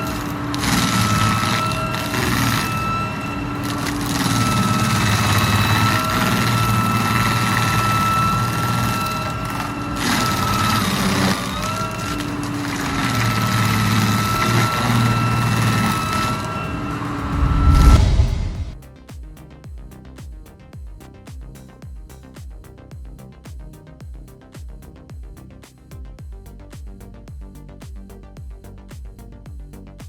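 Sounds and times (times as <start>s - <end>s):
high-pitched whine: 0.0s - 18.8s
machine engine rumbling: 0.0s - 18.8s.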